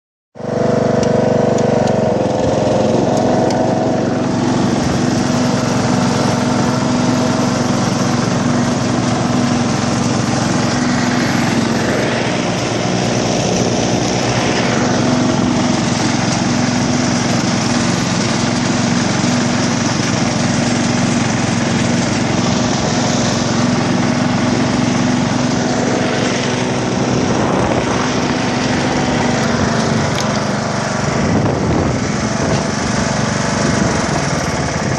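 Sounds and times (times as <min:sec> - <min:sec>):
ride-on mower engine running: 0:00.4 - 0:34.9.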